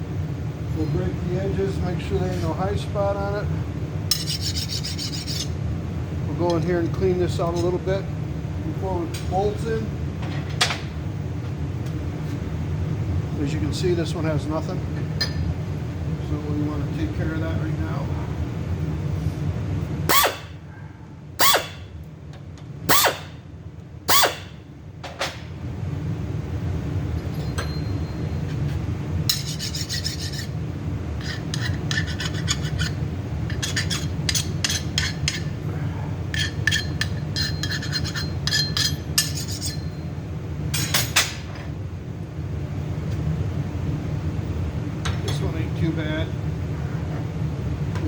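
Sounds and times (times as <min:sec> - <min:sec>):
steady low hum: 0:00.0 - 0:48.0
hand tool scraping steel: 0:04.1 - 0:05.5, 0:20.1 - 0:20.6, 0:21.4 - 0:21.9, 0:22.9 - 0:23.4, 0:24.1 - 0:24.6, 0:29.3 - 0:30.6, 0:31.2 - 0:35.5, 0:36.4 - 0:39.9.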